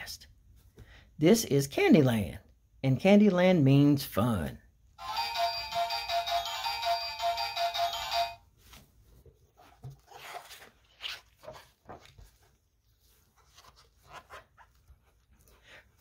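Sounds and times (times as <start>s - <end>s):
book rustling and tapping: 8.6s - 15.2s.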